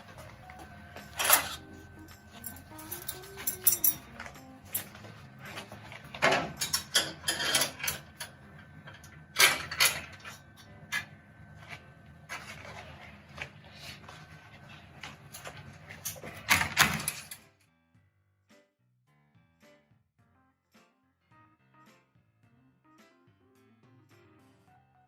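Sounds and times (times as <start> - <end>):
knocks and clatter of handling: 0.0 - 17.4
low steady hum: 0.0 - 17.4.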